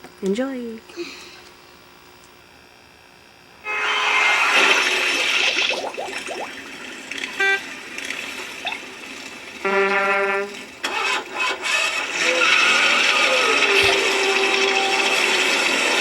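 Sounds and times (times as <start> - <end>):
car horn honking: 3.6 - 4.5, 9.6 - 10.6.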